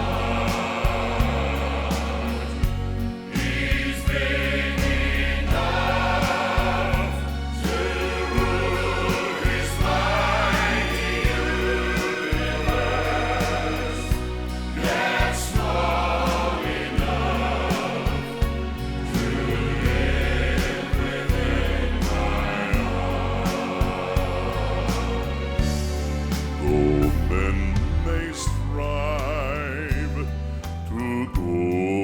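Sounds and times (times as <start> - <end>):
choir singing gospel: 0.0 - 32.0
low bass: 0.0 - 32.0.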